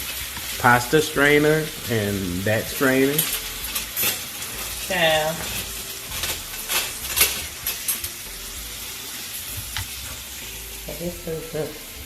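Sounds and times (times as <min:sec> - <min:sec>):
food sizzling in a pan: 0:00.0 - 0:12.0
utensil clinking against pan: 0:02.7 - 0:08.2.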